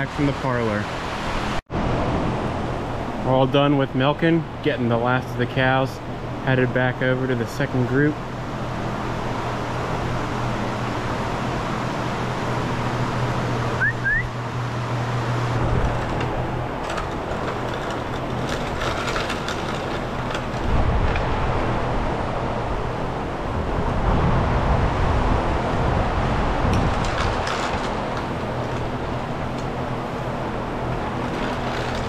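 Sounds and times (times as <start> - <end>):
farm machinery engine running: 0.0 - 32.0
machinery clanks and rattles: 1.9 - 23.7, 26.5 - 32.0
short rising squeaks: 13.8 - 14.4.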